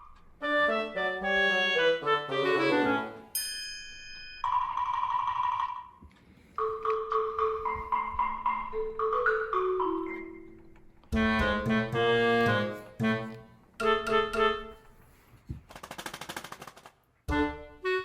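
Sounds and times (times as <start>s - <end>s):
instrumental background music: 0.0s - 3.4s, 6.6s - 15.1s, 17.3s - 18.0s.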